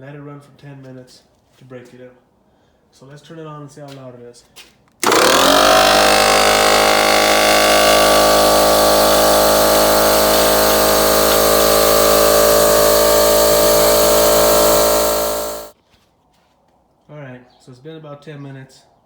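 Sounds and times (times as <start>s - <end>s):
air compressor running: 5.0s - 15.8s.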